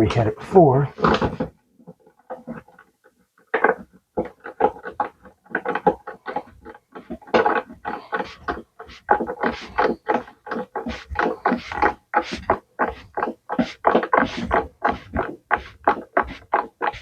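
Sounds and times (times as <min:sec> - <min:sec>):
screw clicking and creaking: 0:01.9 - 0:12.0.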